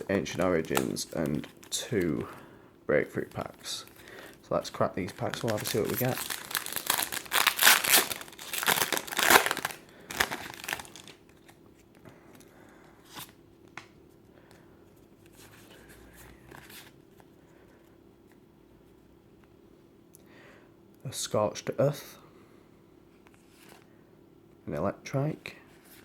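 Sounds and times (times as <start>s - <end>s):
foil wrapper crinkling and tearing: 4.7s - 11.3s.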